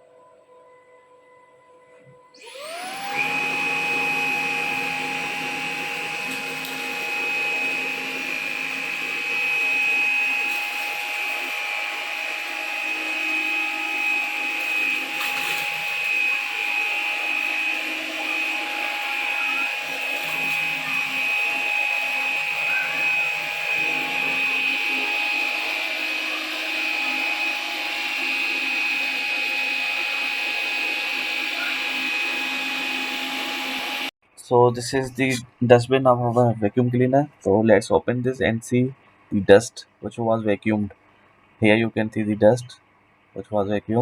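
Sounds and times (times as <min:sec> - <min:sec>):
stick vacuum motor whine: 0:02.0 - 0:34.1.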